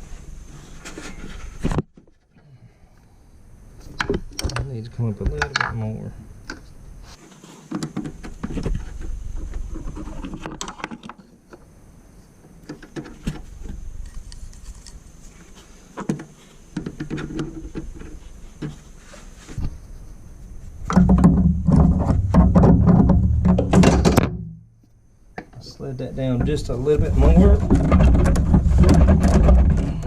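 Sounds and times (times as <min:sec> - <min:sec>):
rubber hose creaking and clicking: 0:12.6 - 0:15.0.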